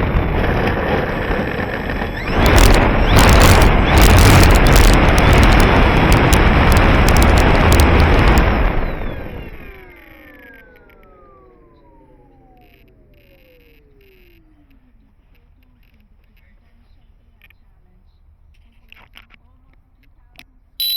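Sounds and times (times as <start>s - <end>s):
wind buffeting microphone: 0.0s - 9.8s
whine falling in pitch: 0.0s - 14.8s.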